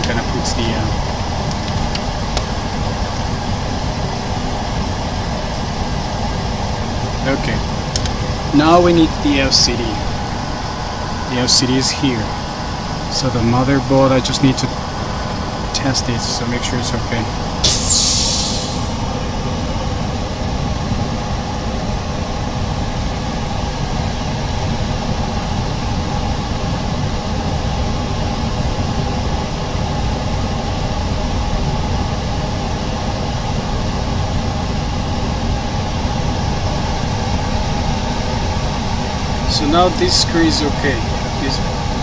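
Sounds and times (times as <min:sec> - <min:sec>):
noisy rush: 0:00.0 - 0:22.1
constant hum tones: 0:00.0 - 0:42.0
steady mechanical drone: 0:00.0 - 0:42.0.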